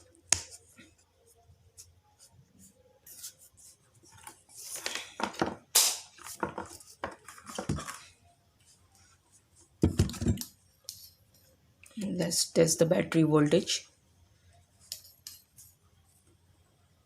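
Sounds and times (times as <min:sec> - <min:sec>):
small parts handled on workbench: 0:06.2 - 0:08.1.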